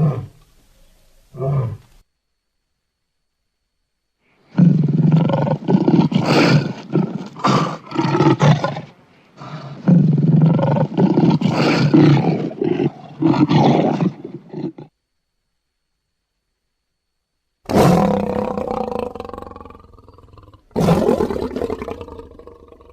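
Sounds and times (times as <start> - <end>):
lion roaring and snarling: 4.5 - 14.9, 17.7 - 22.9.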